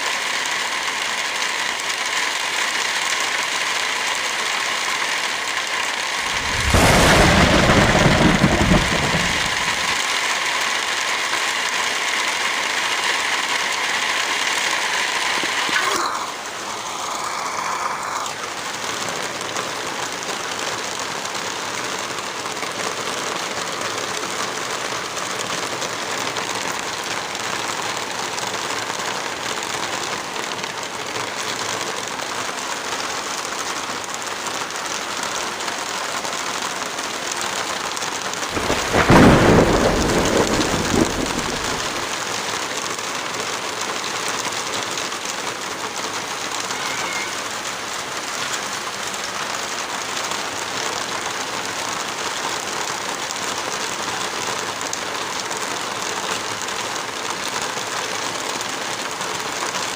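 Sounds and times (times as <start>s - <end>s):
steady rain: 0.0s - 59.9s
low rumble of thunder: 6.2s - 10.1s, 38.5s - 42.2s.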